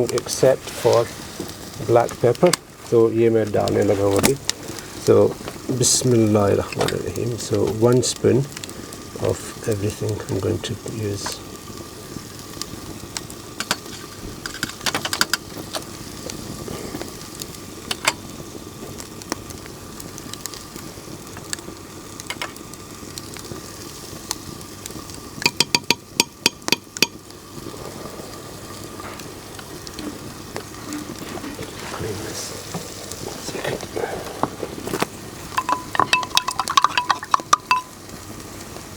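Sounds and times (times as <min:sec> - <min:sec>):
food sizzling in oil: 0:00.0 - 0:38.9
spoon clicking against pot: 0:25.4 - 0:27.2, 0:35.6 - 0:38.0.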